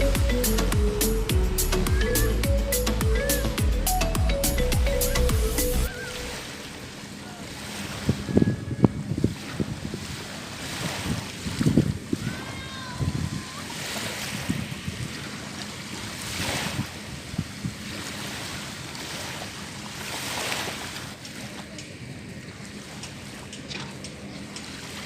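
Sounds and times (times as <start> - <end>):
jet ski engine humming: 0.0 - 25.0
wind buffeting microphone: 7.8 - 18.8
rushing water spray: 9.1 - 25.0.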